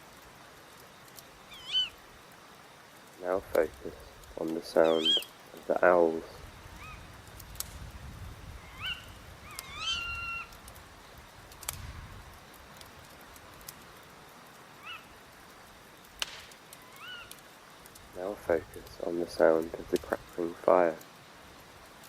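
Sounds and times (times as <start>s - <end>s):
sharp crackles: 0.0s - 22.0s
owls calling: 1.5s - 2.0s, 4.7s - 5.4s, 6.8s - 7.1s, 8.6s - 10.6s, 14.8s - 15.2s, 16.8s - 17.4s
low wind rumble: 5.0s - 14.2s.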